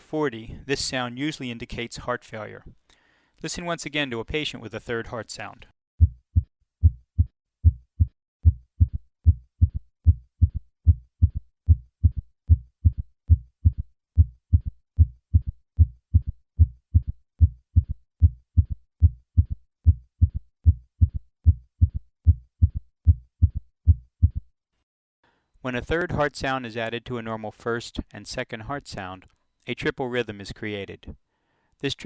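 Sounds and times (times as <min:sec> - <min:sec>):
heartbeat gallop low thuds: 0:06.0 - 0:24.5.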